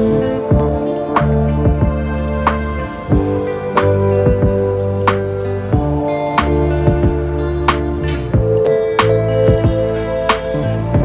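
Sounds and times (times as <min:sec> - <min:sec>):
drum hits: 0:00.0 - 0:09.9
held chords and bass notes: 0:00.0 - 0:11.0.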